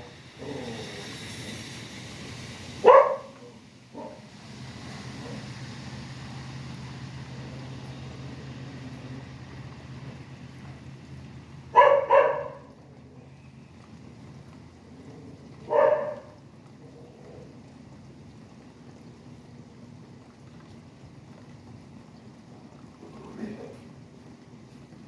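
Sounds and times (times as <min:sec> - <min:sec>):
highway traffic: 0:00.0 - 0:16.6
low engine hum: 0:00.0 - 0:25.0
rain hiss: 0:00.0 - 0:25.0
dog barking: 0:02.8 - 0:04.2, 0:11.7 - 0:12.8, 0:15.6 - 0:16.4.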